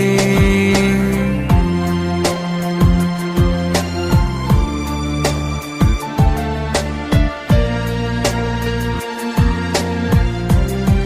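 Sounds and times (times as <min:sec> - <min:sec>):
instrumental music with steady beat: 0:00.0 - 0:11.0.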